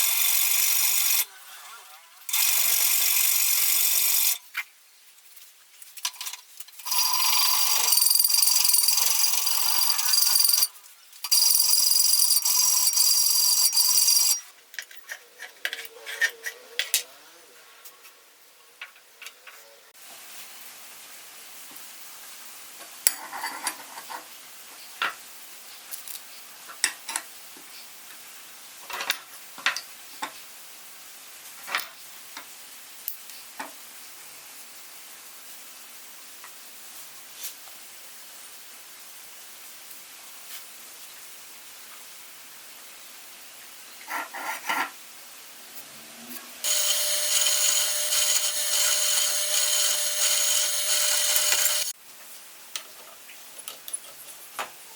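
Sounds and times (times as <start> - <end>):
power tool whining: 46.6 - 52.0.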